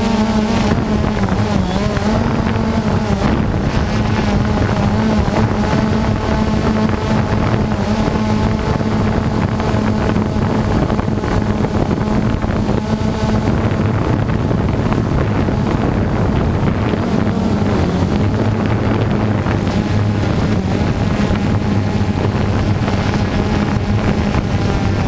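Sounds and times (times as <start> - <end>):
low droning tone: 0.0 - 25.0.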